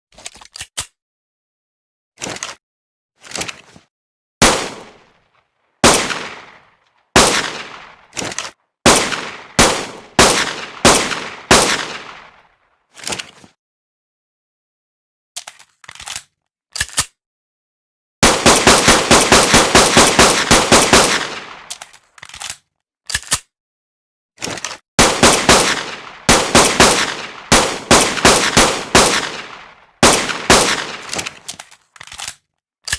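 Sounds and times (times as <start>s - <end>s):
pistol gunshots: 4.4s - 5.1s, 5.8s - 8.2s, 8.9s - 12.4s, 18.2s - 21.7s, 25.0s - 31.5s.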